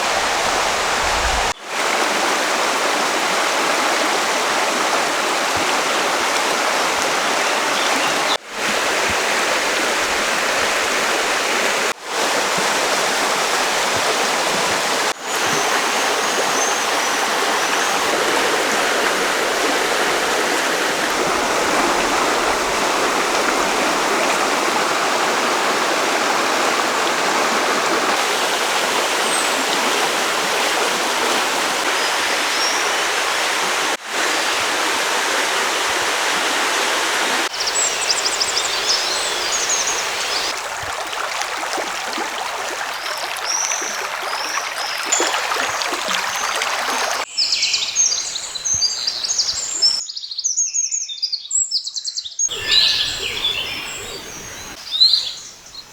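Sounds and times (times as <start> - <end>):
river water rushing: 0.0 - 47.3, 52.5 - 55.6
small birds chirping: 37.5 - 40.5, 46.4 - 55.9.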